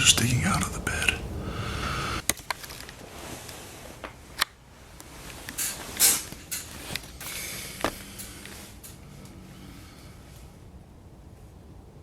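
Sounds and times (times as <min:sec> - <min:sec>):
rustling of handling: 0:02.3 - 0:09.3.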